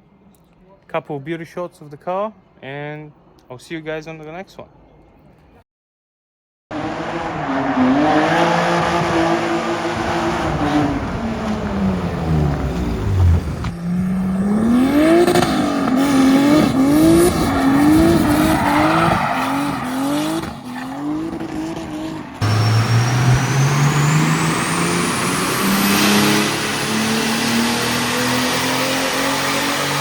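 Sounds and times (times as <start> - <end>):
car engine revving: 6.7 - 30.0
high turbo whine: 6.8 - 30.0.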